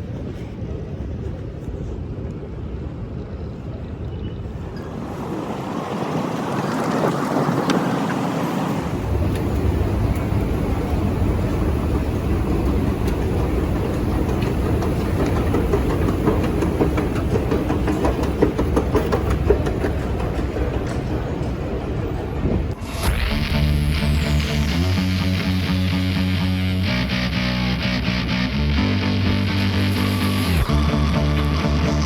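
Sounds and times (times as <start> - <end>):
train low rumble: 0.0 - 32.0
train rattling clicks: 4.7 - 23.5.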